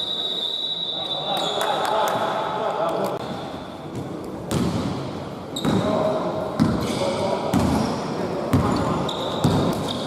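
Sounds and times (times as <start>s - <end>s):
basketball bouncing on court: 4.0s - 5.0s, 6.6s - 7.9s, 9.4s - 10.0s
shoe squeak: 5.6s - 5.8s, 8.6s - 10.0s.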